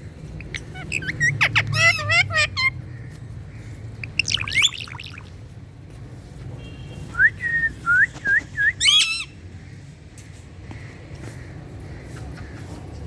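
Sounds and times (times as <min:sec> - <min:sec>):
parrot whistling and chirping: 0:00.4 - 0:02.8, 0:04.0 - 0:05.3, 0:07.4 - 0:09.3.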